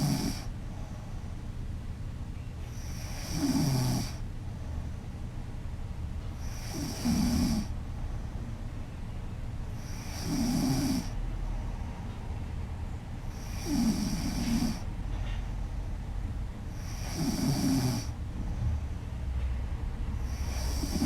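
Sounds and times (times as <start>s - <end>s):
woman snoring loudly: 0.0s - 0.4s, 2.9s - 4.2s, 6.5s - 7.7s, 9.9s - 11.2s, 13.4s - 14.9s, 16.8s - 18.1s, 20.3s - 21.0s.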